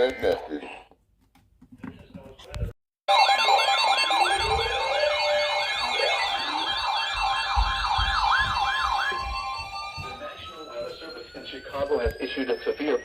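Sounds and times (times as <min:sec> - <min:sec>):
steady alarm tones: 0:03.1 - 0:13.0
warbling high tone: 0:03.1 - 0:13.0
yelping siren: 0:03.1 - 0:13.0.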